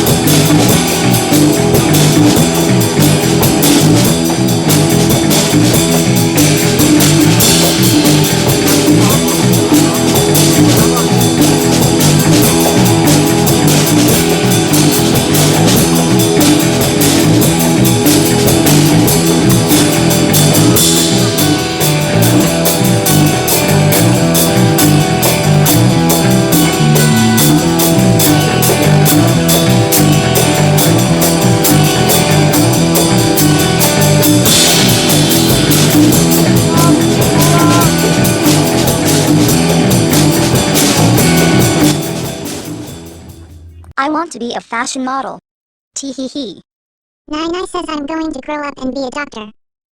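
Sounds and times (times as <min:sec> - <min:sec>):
upbeat rock jazz instrumental: 0:00.0 - 0:43.9.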